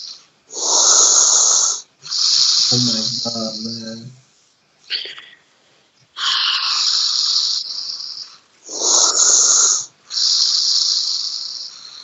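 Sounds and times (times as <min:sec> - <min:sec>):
person snoring loudly: 0:00.0 - 0:04.0, 0:06.2 - 0:12.0.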